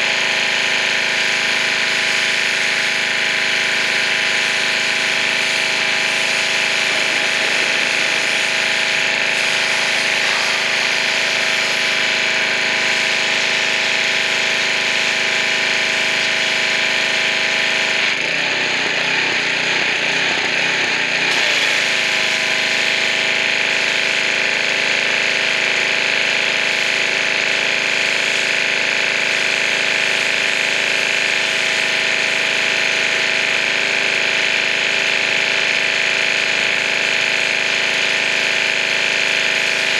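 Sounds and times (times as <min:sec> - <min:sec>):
pressure washer motor humming: 0:00.0 - 0:39.9
pressure washer spray hissing: 0:01.0 - 0:14.6.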